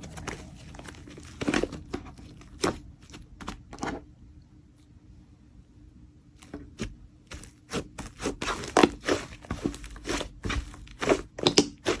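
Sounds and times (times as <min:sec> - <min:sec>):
slime popping and squelching: 0:07.3 - 0:12.0.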